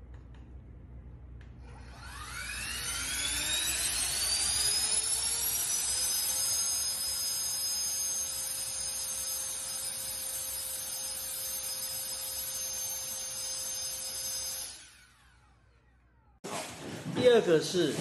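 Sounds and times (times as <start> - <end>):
electric blower howl: 1.6 - 10.2.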